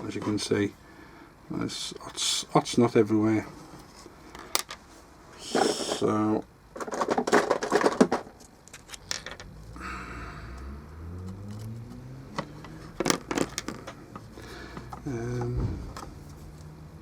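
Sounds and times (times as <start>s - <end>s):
small parts clicking and rattling: 4.3s - 4.8s, 6.8s - 9.6s, 12.4s - 16.7s.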